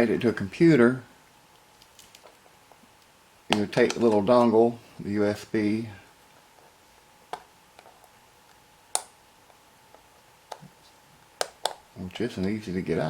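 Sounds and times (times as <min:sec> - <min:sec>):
sharp plastic clicks: 0:08.9 - 0:09.2.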